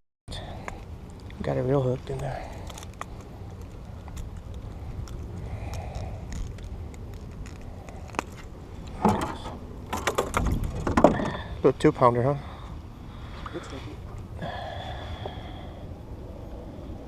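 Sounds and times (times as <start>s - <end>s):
wind rumbling on microphone: 0.4s - 11.7s.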